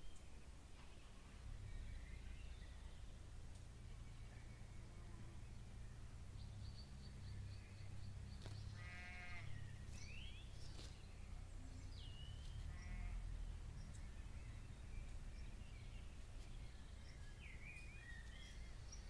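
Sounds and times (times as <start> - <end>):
nasal bleating call: 8.8 - 9.6, 12.7 - 13.3
steady low rumble: 9.4 - 19.0.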